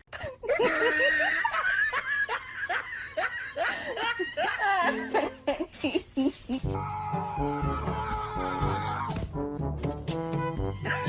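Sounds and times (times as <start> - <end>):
person laughing: 0.2 - 6.7.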